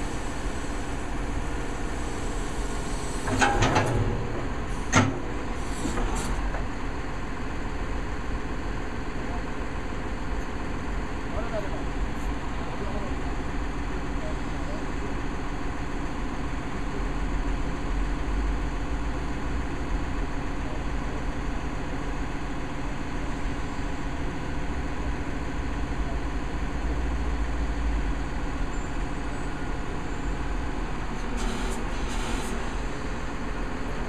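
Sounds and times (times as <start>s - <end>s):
short hissing bursts: 31.4s - 33.0s.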